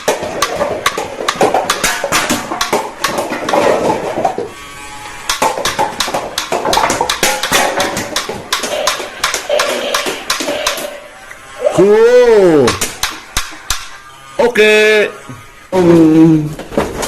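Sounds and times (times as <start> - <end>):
toy gun motor buzz: 4.2 - 5.8, 8.5 - 16.0.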